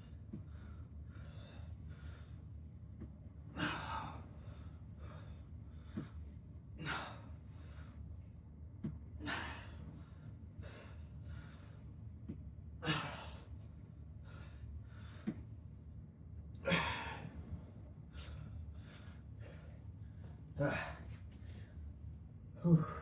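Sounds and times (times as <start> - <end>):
steady low hum: 0.0 - 23.0
man breathing hard: 0.4 - 2.4, 9.2 - 12.0.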